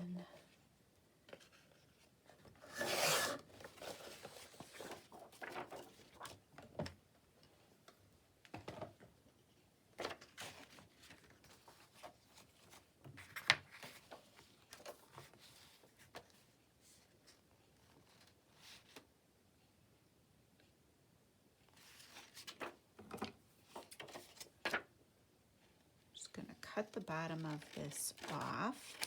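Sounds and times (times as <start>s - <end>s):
paper rustling: 1.3s - 6.4s, 21.8s - 24.9s, 26.8s - 29.0s.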